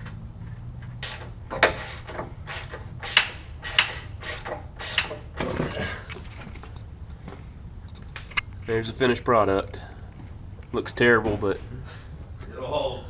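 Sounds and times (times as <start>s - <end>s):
ratchet wrench rasping strokes: 1.0s - 5.4s.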